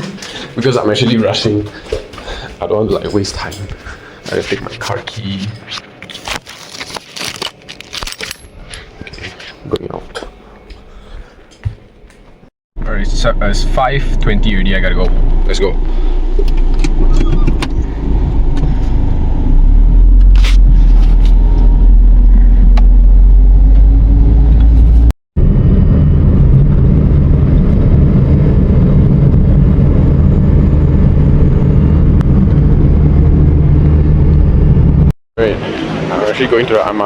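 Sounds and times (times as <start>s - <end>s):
moving vehicle rumble: 12.8s - 37.0s.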